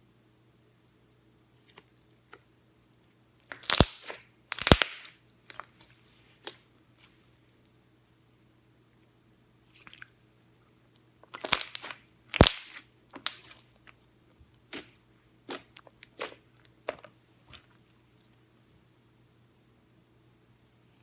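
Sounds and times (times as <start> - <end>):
slime crackling pops: 3.5 - 5.2, 11.3 - 13.6.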